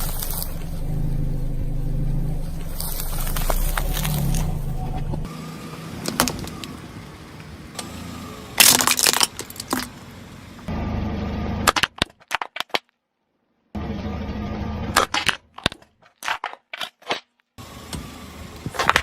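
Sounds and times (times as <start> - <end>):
objects crackling and crunching: 0.0 - 1.0, 2.3 - 5.3, 8.6 - 10.0, 11.7 - 13.0, 15.0 - 17.5, 18.6 - 19.0
background rumble: 0.0 - 5.3.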